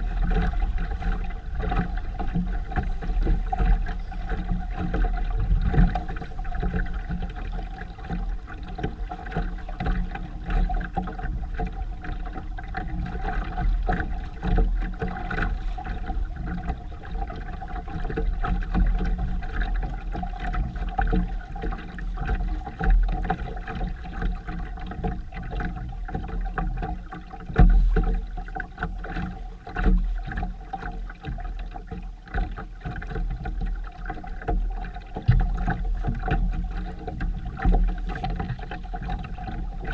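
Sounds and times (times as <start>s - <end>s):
low hum: 0.0s - 20.6s, 33.7s - 39.9s
wind and water rushing: 0.0s - 39.9s.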